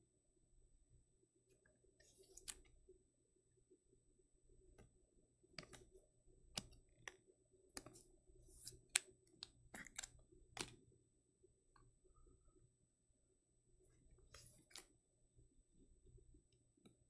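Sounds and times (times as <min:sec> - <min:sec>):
cards and plastic cases clicking: 0:02.0 - 0:02.6, 0:05.6 - 0:05.9, 0:07.8 - 0:10.8.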